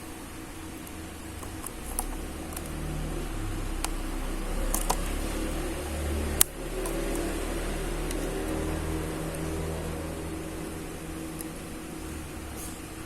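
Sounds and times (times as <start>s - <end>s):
steady low hum: 0.0s - 13.0s
plastic clicks and taps: 1.4s - 2.8s.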